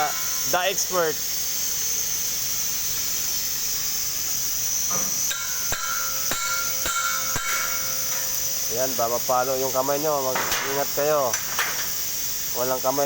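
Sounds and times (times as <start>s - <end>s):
steady high hiss: 0.0s - 13.0s
hammer striking metal: 4.9s - 11.9s.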